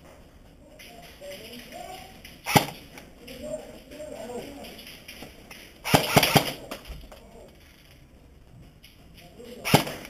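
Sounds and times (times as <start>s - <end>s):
airsoft gun firing: 2.4s - 2.9s, 5.8s - 6.8s, 9.6s - 10.0s.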